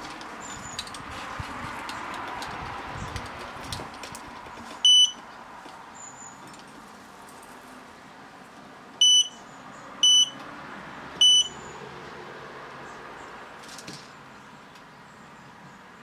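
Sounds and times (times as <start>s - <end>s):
loud short electronic beeps: 4.9s - 5.2s, 9.0s - 9.4s, 10.0s - 10.4s, 11.2s - 11.6s.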